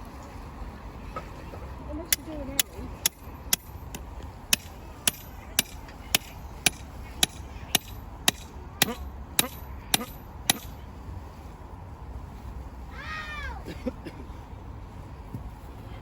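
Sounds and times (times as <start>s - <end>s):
hammer blows on iron rod: 4.5s - 10.8s.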